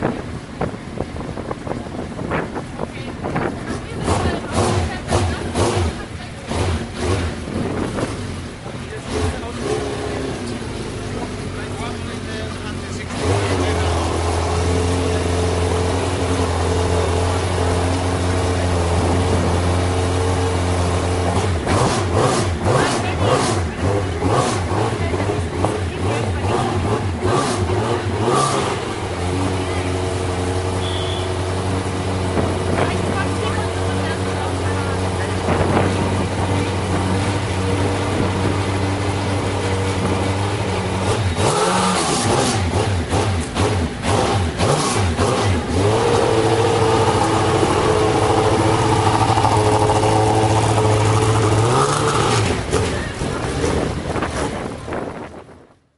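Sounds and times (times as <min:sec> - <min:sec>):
race car engine idling and revving: 0:00.0 - 0:55.9.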